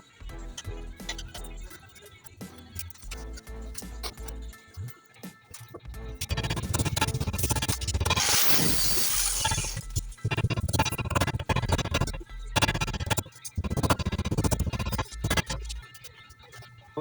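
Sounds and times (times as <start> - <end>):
music with heavy bass beat: 0.2 - 1.7, 2.8 - 4.7, 5.8 - 15.8
harsh hissing noise: 8.0 - 10.5.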